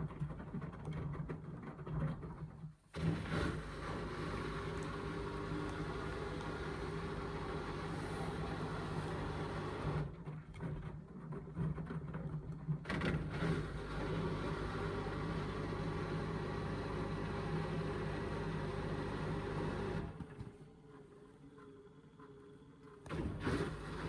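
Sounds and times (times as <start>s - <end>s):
washing machine motor and drum: 3.0s - 20.2s.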